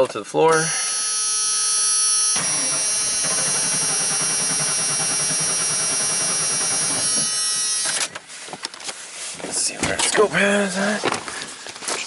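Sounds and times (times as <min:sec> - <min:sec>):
starter motor cranking engine: 0:01.8 - 0:08.1.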